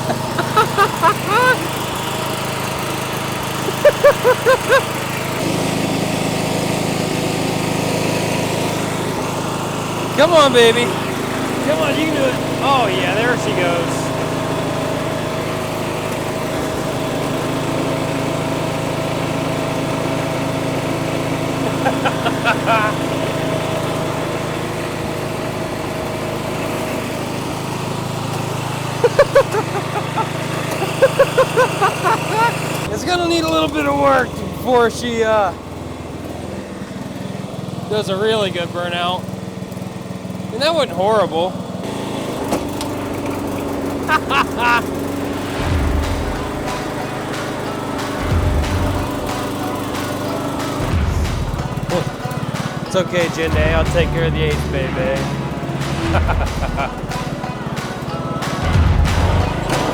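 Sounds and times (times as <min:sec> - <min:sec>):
man whooping: 0:00.0 - 0:01.8, 0:03.7 - 0:04.9, 0:21.8 - 0:23.1, 0:29.0 - 0:32.6, 0:44.1 - 0:44.9
tyres squeaking on pavement: 0:00.0 - 0:45.6
riding mower engine running: 0:00.0 - 0:59.9.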